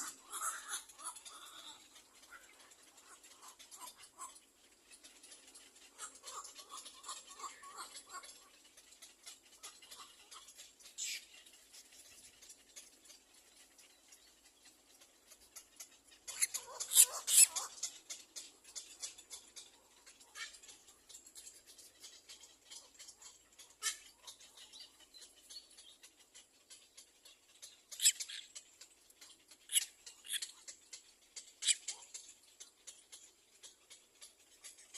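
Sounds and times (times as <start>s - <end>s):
scratchy ticks: 0.0s - 34.9s
chicks squeaking: 16.2s - 17.8s, 27.3s - 32.3s.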